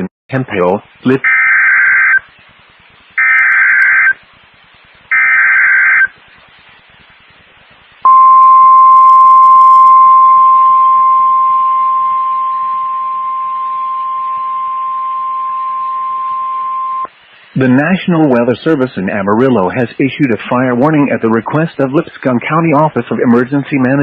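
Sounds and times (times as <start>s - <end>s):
steady single-pitch alert tone: 8.1s - 17.1s.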